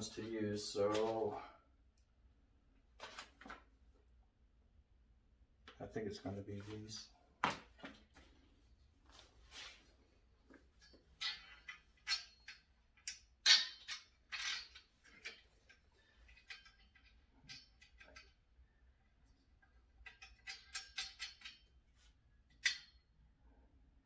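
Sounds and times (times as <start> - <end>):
bolts and nuts clinking: 10.7 - 23.2.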